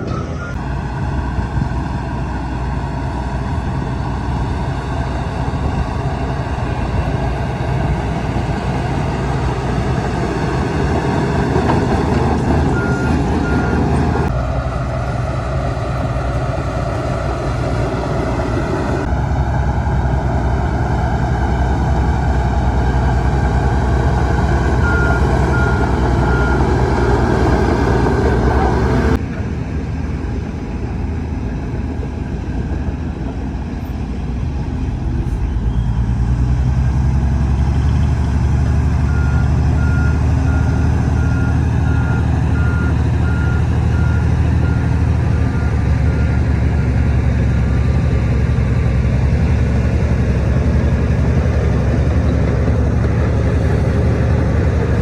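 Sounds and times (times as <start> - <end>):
heavy diesel machinery running: 0.0 - 55.0
backup alarm beeping: 12.4 - 14.0, 24.3 - 28.3.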